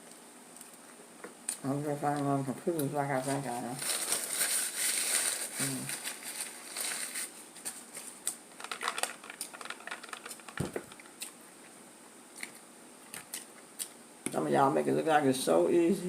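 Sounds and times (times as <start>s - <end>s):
rustling: 3.1s - 11.8s.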